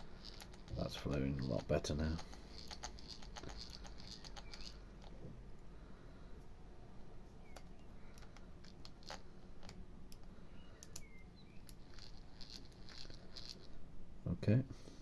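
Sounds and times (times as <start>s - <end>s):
fishing reel clicking: 0.0s - 4.8s, 11.7s - 13.7s.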